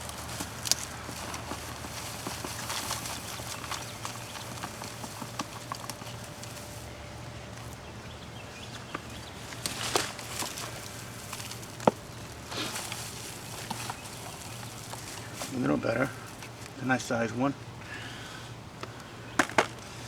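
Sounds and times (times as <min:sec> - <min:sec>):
digging in soil: 0:00.0 - 0:16.9.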